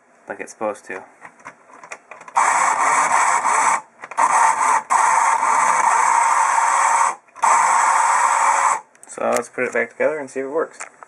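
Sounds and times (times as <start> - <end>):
hole punch motor running: 2.3 - 8.9.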